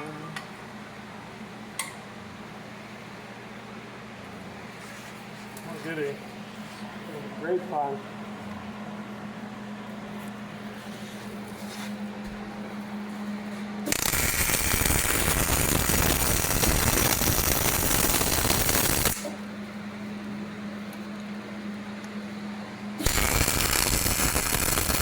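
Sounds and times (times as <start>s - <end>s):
welder low hum: 13.8s - 20.1s, 22.7s - 25.0s
welding arc crackling: 13.9s - 19.3s, 23.0s - 25.0s.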